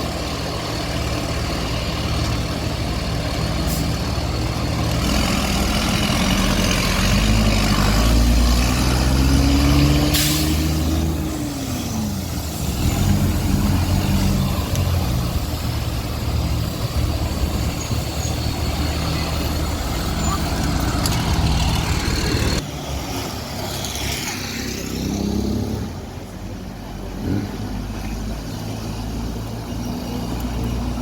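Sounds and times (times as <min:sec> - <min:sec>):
diesel coach engine running: 0:00.0 - 0:23.6
air hiss: 0:10.1 - 0:10.9.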